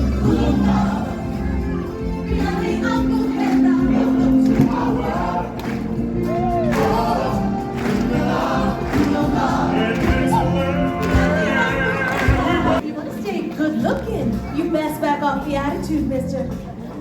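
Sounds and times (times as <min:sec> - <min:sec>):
choir singing: 0:00.0 - 0:12.8
background music: 0:00.0 - 0:17.0.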